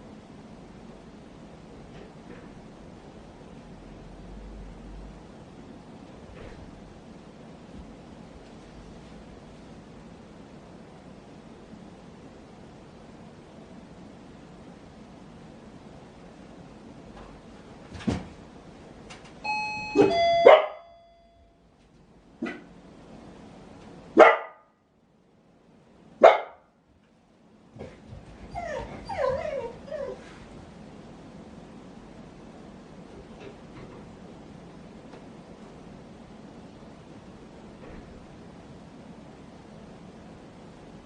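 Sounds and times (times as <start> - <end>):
faint room tone hiss: 0.0 - 41.0
dog barking: 20.4 - 20.8, 24.2 - 24.7, 26.2 - 26.7
dog whining: 28.4 - 30.4.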